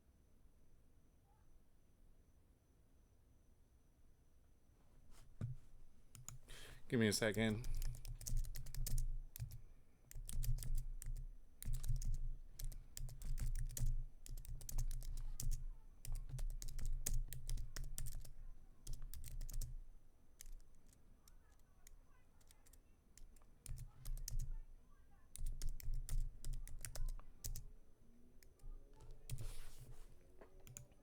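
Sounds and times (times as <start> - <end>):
typing on a keyboard: 6.1 - 6.5, 7.1 - 27.8, 28.4 - 29.7, 30.6 - 31.0.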